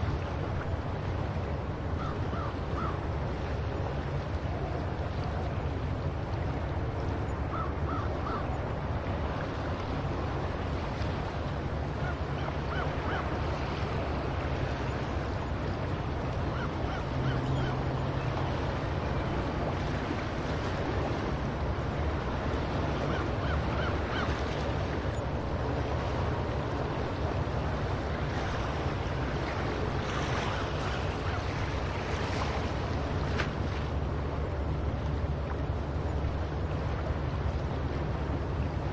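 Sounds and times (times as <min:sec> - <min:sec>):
ocean surf: 0:00.0 - 0:38.9
wind: 0:00.0 - 0:38.9
seagulls calling: 0:01.9 - 0:03.0, 0:07.4 - 0:08.6, 0:12.0 - 0:13.5, 0:16.4 - 0:19.5, 0:23.0 - 0:24.9, 0:30.2 - 0:32.0.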